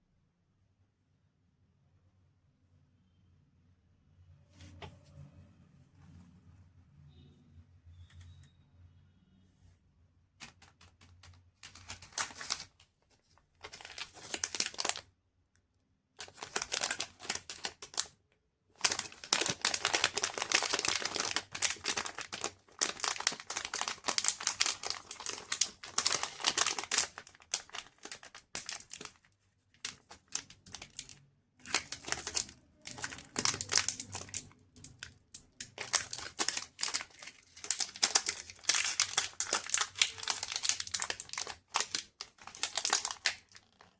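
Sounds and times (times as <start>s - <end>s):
chocolate wrappers crinkling: 10.4s - 15.1s, 16.2s - 43.9s.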